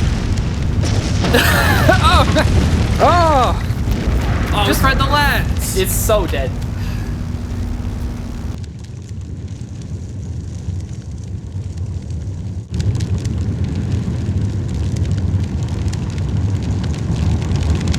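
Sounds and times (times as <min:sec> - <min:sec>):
low fire rumble: 0:00.0 - 0:08.6, 0:11.5 - 0:17.9.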